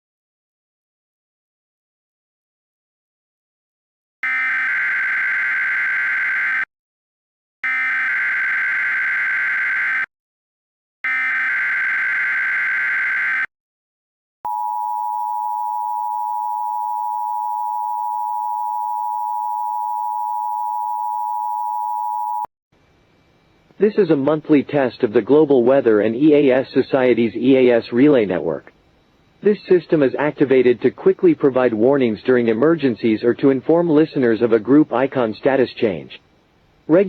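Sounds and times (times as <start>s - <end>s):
two-tone attention signal: 14.5s - 22.5s.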